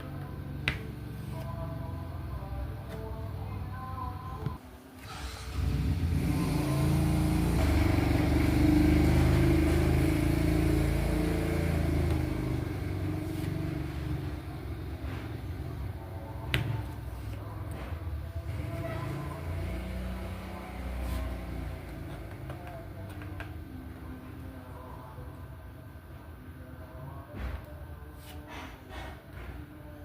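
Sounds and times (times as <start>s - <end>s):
vehicle engine passing by: 5.0s - 16.1s, 17.8s - 23.0s.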